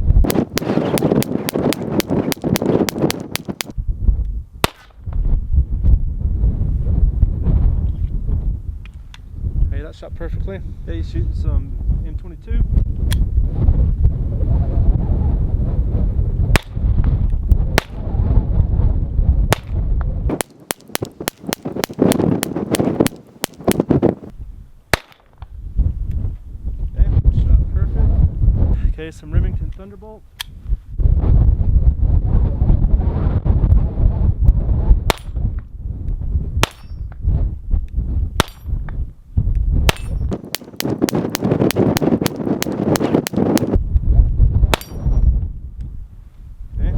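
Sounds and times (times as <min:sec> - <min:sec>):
wind rumbling on microphone: 0:00.0 - 0:46.9
pistol shots: 0:20.3 - 0:23.9, 0:39.9 - 0:43.7.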